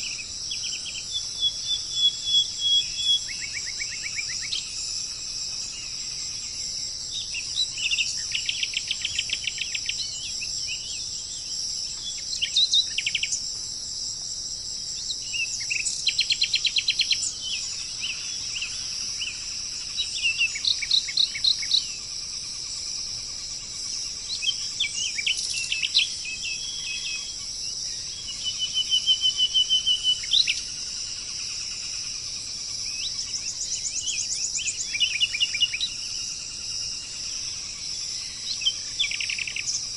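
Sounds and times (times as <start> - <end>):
songbird trilling: 0.0 - 4.9, 15.0 - 22.2, 23.7 - 32.0, 32.8 - 39.9
high-pitched insect drone: 0.0 - 39.9.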